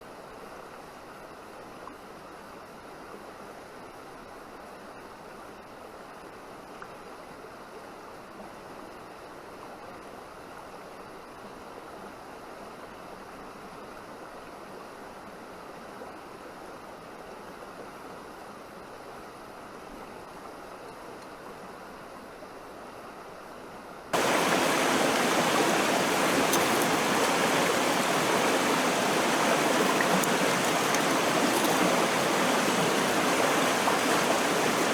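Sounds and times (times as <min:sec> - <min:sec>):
river water flowing over stones: 0:24.2 - 0:34.9.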